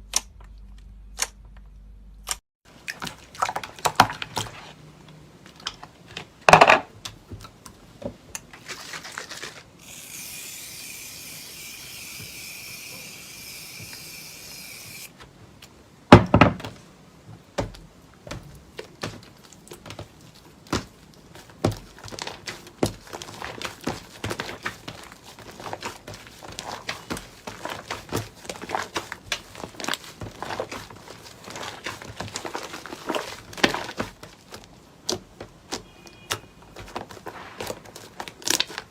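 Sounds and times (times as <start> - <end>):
steady hiss: 9.8 - 15.2
slime squelches: 18.4 - 38.9.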